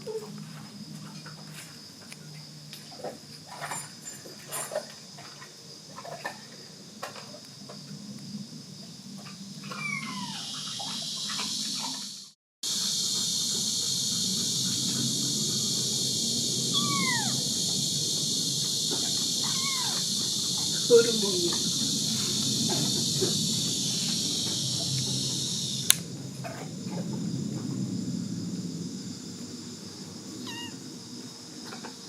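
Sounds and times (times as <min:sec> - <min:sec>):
crickets chirring: 0:00.0 - 0:32.0
kitten meowing: 0:09.7 - 0:10.5, 0:16.7 - 0:17.4, 0:19.4 - 0:20.0, 0:30.4 - 0:30.8.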